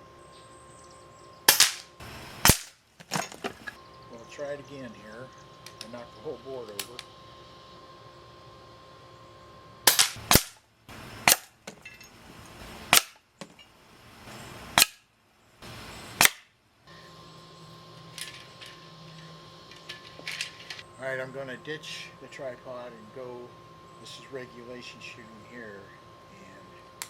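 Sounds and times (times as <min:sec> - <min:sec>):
air rifle sharp cracks: 0:01.5 - 0:02.8, 0:09.9 - 0:10.6, 0:11.2 - 0:11.6, 0:12.9 - 0:13.2, 0:14.8 - 0:15.1, 0:16.2 - 0:16.5.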